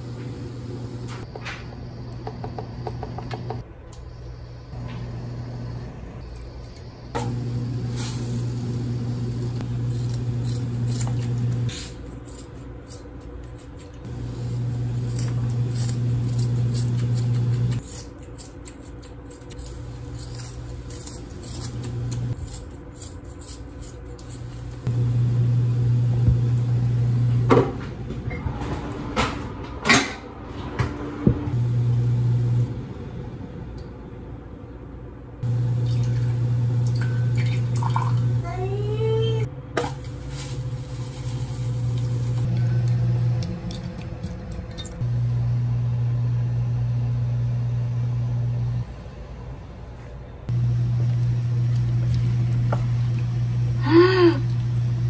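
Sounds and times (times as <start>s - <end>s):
low hum: 39.2s - 55.0s.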